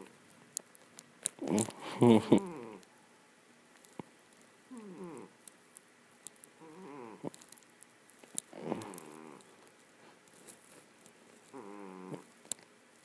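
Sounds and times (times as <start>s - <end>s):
cat snoring: 2.4s - 2.8s, 4.7s - 5.4s, 6.6s - 7.3s, 8.5s - 9.4s, 11.5s - 12.3s.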